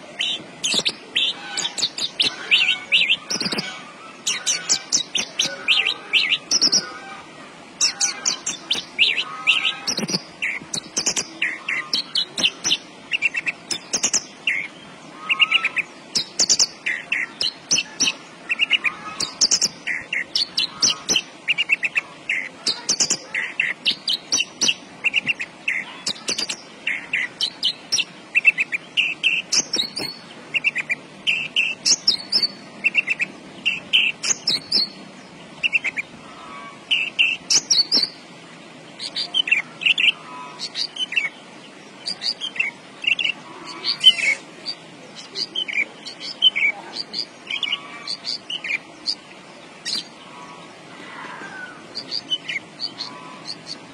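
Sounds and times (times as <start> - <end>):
lark singing high chirps: 0.2 - 6.9, 7.8 - 35.0, 36.9 - 38.2.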